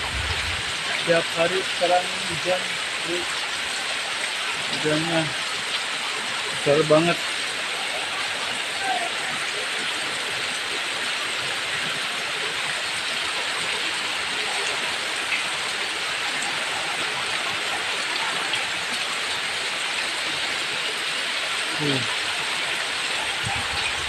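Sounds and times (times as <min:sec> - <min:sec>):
heavy rain pouring: 0:00.0 - 0:24.0.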